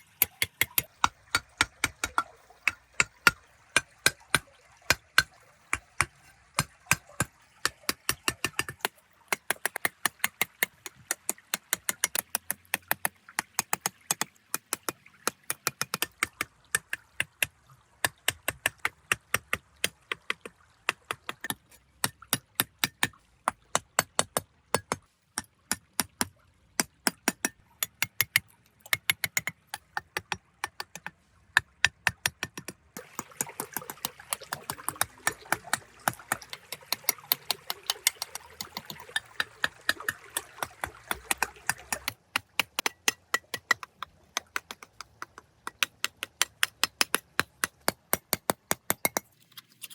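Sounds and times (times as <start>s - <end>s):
sharp clicks of small hard objects: 0.0s - 4.4s.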